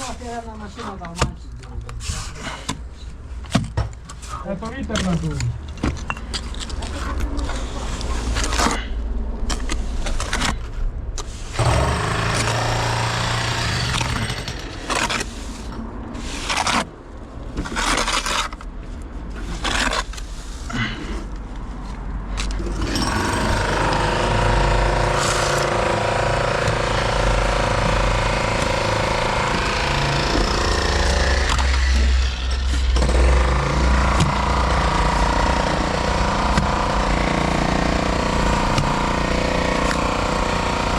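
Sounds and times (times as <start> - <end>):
jackhammer running: 11.6 - 15.3, 22.6 - 40.9.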